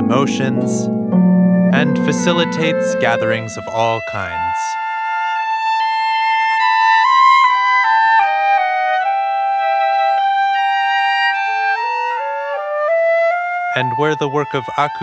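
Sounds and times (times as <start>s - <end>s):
slow instrumental melody: 0.0s - 4.8s.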